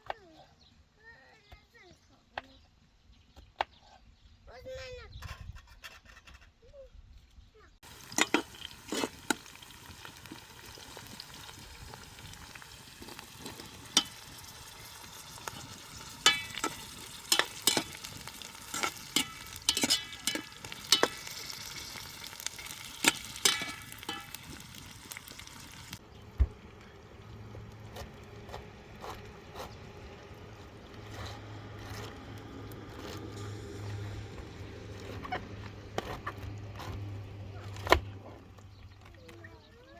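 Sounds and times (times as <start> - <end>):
food sizzling in a pan: 7.8 - 26.0
utensil scraping and knocking pan: 7.9 - 9.7, 12.9 - 25.2.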